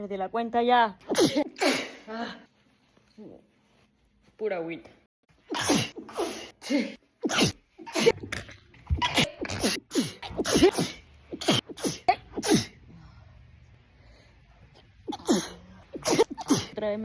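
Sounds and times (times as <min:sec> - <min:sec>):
woman sneezing: 0:01.1 - 0:02.4, 0:05.5 - 0:08.2, 0:09.0 - 0:12.8, 0:15.0 - 0:16.9.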